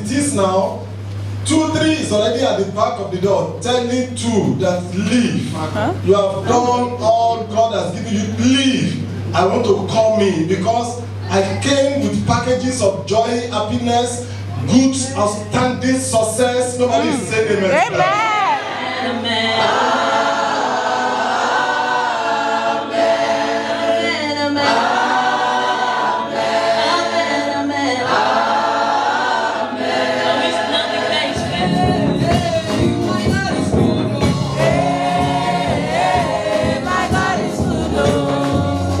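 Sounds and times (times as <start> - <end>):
choir singing gospel song: 14.6 - 39.0
bass-heavy accompaniment: 31.4 - 39.0.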